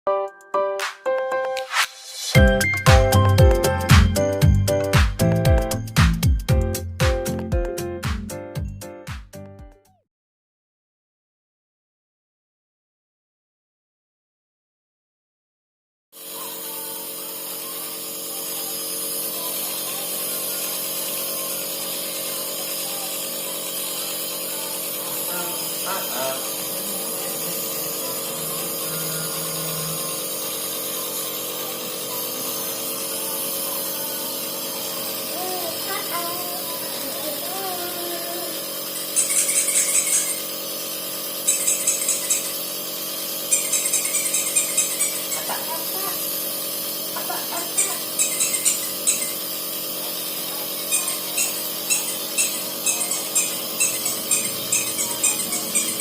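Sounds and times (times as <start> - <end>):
compressor humming: 16.2 - 56.0
nebulizer mechanical buzz: 16.2 - 56.0.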